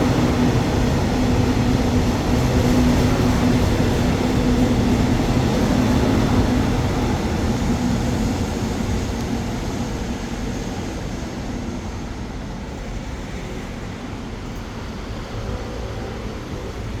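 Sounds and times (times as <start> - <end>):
train rumbling: 0.0 - 17.0.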